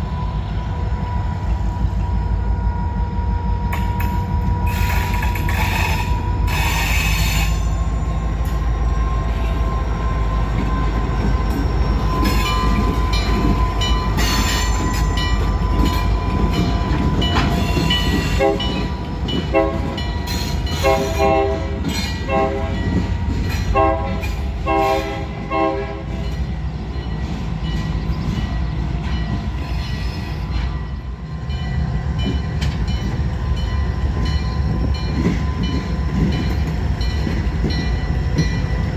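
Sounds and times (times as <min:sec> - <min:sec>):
train rumble: 0:00.0 - 0:38.9
locomotive horn blasts: 0:18.3 - 0:18.7, 0:19.5 - 0:20.0, 0:20.8 - 0:22.8, 0:23.7 - 0:26.1.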